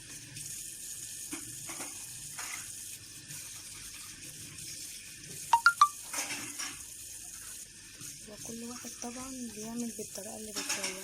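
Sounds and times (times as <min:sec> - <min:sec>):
dishes clinking together: 0:10.6 - 0:11.0.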